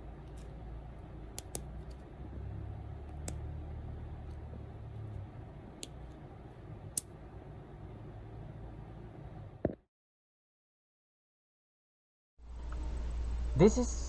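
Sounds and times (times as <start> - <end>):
low steady hum: 0.0 - 9.7
sharp clicks: 1.3 - 2.0.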